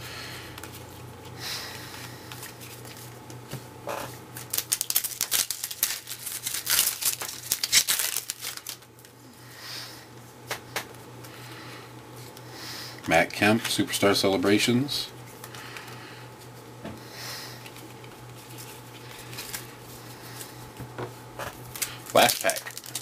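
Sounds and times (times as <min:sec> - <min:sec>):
plastic wrapper crinkling: 0:04.4 - 0:09.2, 0:17.6 - 0:20.6, 0:21.6 - 0:23.0.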